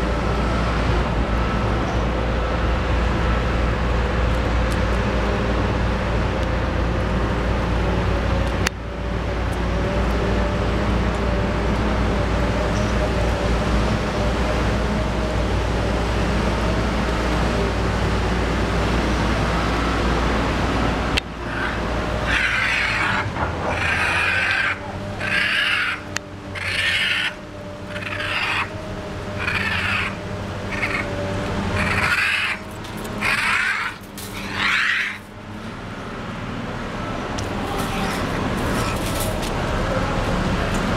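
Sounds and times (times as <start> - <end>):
steady low rumble: 20.9 - 25.4
harsh animal calls: 21.2 - 35.4, 37.5 - 39.2.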